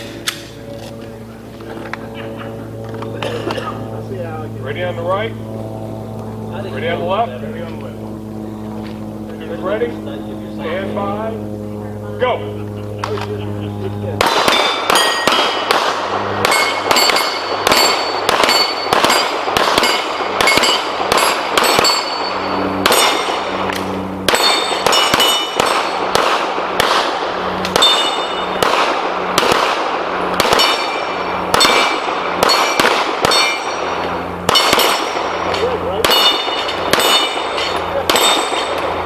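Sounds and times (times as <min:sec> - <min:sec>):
steel targets ringing: 0:14.2 - 0:15.8, 0:16.4 - 0:23.7, 0:24.3 - 0:26.2, 0:27.7 - 0:29.5, 0:30.4 - 0:39.0
pistol shots: 0:14.2 - 0:39.0.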